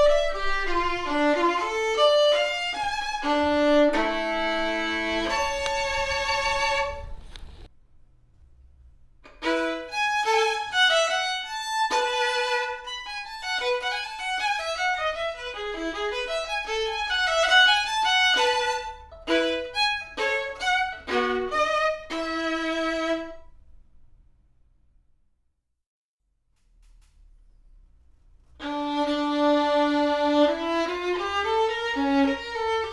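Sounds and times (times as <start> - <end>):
violin melody: 0.0 - 7.7, 9.3 - 23.6, 28.6 - 32.9
faint low hum: 0.0 - 25.4.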